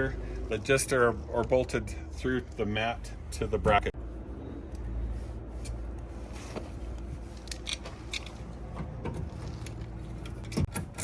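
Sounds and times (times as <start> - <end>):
bolts and washers clicking: 7.0 - 11.0.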